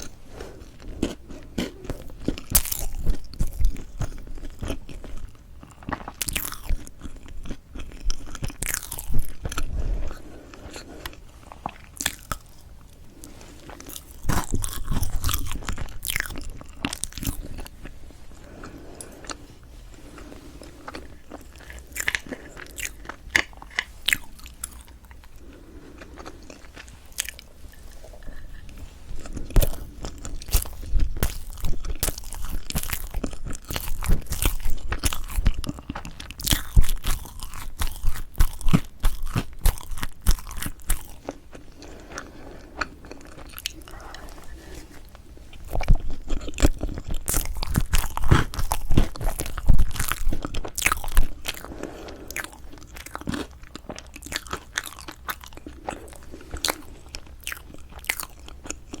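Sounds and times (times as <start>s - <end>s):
close chewing and biting cake: 0.0s - 59.0s.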